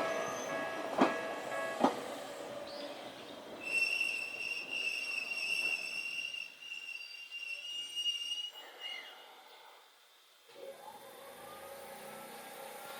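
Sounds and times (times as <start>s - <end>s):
train wheels squealing: 0.0s - 0.8s, 3.6s - 9.2s
train rumble: 0.0s - 7.3s.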